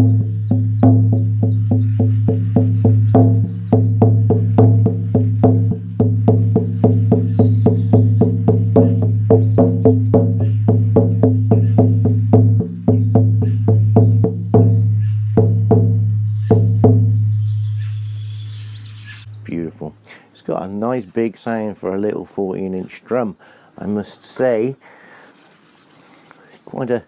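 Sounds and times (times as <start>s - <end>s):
frame drum booming: 0.0s - 18.6s.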